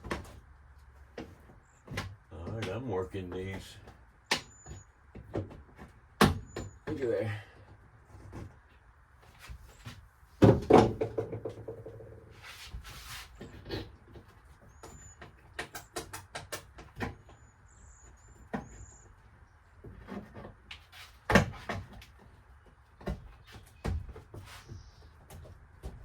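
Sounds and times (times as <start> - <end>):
knocks and taps on wall paneling: 1.1 - 7.0, 10.4 - 12.2, 14.8 - 17.3, 21.3 - 26.0
faint bird chirps: 4.2 - 5.0, 6.4 - 7.4, 17.2 - 19.5.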